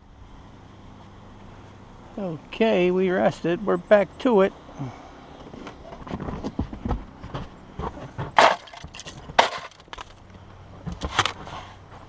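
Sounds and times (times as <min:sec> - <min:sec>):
shovel scraping: 0:08.3 - 0:10.2
snow shovel thudding into snow: 0:08.4 - 0:09.8.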